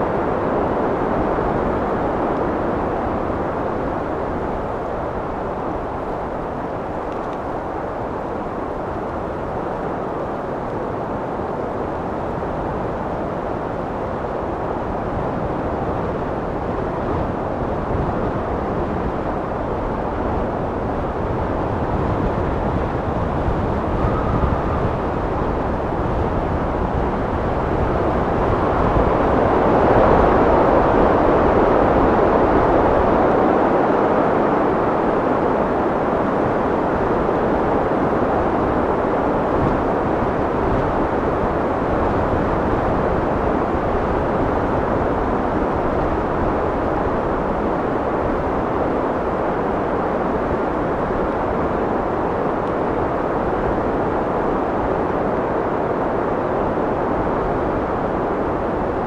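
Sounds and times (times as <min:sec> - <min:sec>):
wind blowing: 0:00.0 - 0:59.0.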